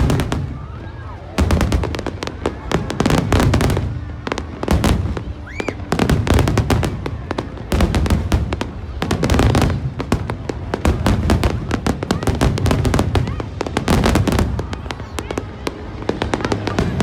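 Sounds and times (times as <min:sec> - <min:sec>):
firework bangs and crackles: 0:00.0 - 0:17.0
rising firework whistle: 0:04.8 - 0:06.6.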